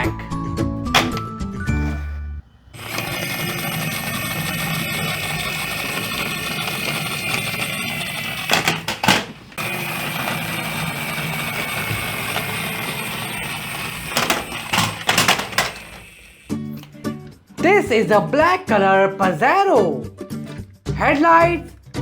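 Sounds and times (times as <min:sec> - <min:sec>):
toy bus wheels whirring rattle: 0:02.7 - 0:16.9.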